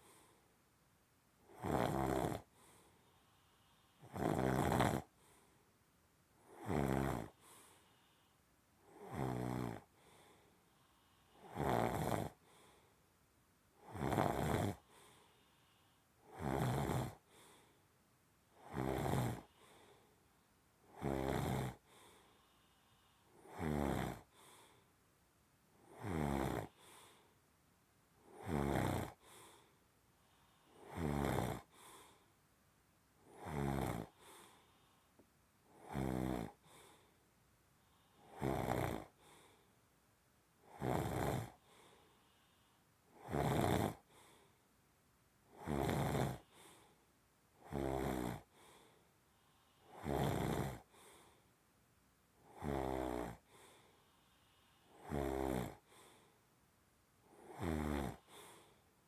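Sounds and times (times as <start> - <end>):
soft breath: 0.0 - 0.6, 2.4 - 4.1, 5.0 - 5.8, 7.3 - 8.8, 9.8 - 11.5, 12.3 - 13.2, 14.8 - 16.2, 17.2 - 18.0, 19.4 - 20.5, 21.8 - 23.4, 24.2 - 25.0, 26.7 - 27.5, 29.1 - 30.9, 31.6 - 32.4, 34.1 - 35.3, 36.5 - 38.4, 39.1 - 39.9, 41.5 - 43.2, 44.0 - 44.7, 46.4 - 47.2, 48.4 - 50.0, 50.8 - 51.6, 53.4 - 55.0, 55.8 - 56.5, 58.2 - 59.0
person snoring: 1.5 - 2.5, 4.0 - 5.1, 6.5 - 7.4, 8.9 - 9.9, 11.4 - 12.4, 13.8 - 15.0, 16.3 - 17.2, 18.6 - 20.0, 20.9 - 21.9, 23.4 - 24.4, 25.9 - 27.1, 28.3 - 29.3, 30.8 - 31.9, 33.3 - 34.6, 35.8 - 37.0, 38.2 - 39.2, 40.7 - 41.6, 43.2 - 44.0, 45.5 - 46.7, 47.6 - 48.5, 49.8 - 51.0, 52.5 - 53.5, 54.8 - 55.9, 57.3 - 58.7.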